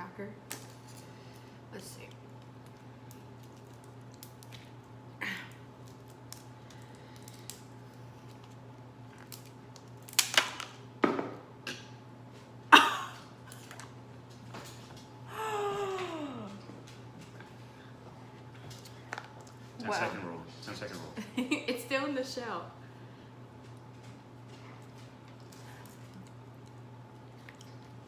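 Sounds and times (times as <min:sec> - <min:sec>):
steady low hum: 0:00.0 - 0:28.0
crab shell cracking: 0:02.3 - 0:04.9, 0:05.5 - 0:10.8.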